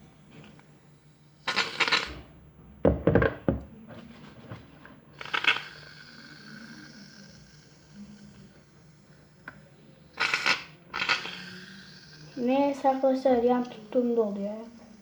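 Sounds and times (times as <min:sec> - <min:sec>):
aerosol can sputtering hisses: 0:01.5 - 0:02.2, 0:05.2 - 0:06.0, 0:10.2 - 0:12.2
dull knocks of can handling: 0:02.6 - 0:04.7.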